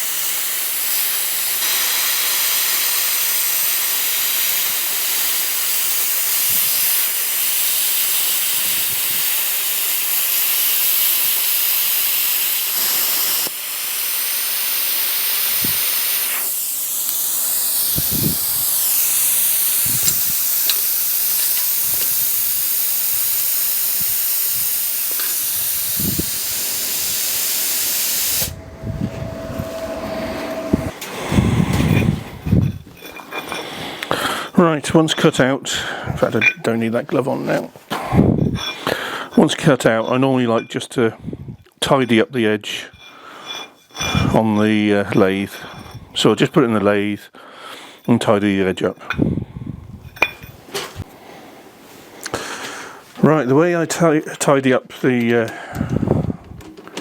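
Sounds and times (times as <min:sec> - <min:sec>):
plasma cutter hissing: 0:00.0 - 0:33.6.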